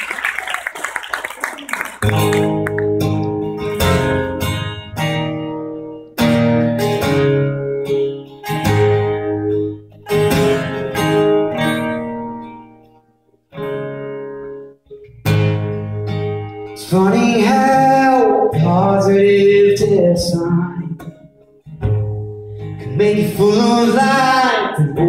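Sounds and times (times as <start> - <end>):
acoustic guitar strumming chords: 2.0 - 25.0.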